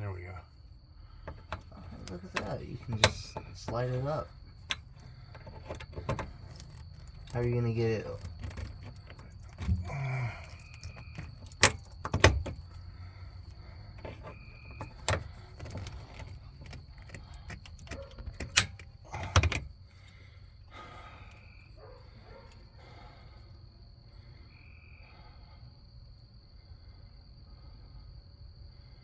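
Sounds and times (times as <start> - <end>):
quiet handling noise: 1.2 - 22.7.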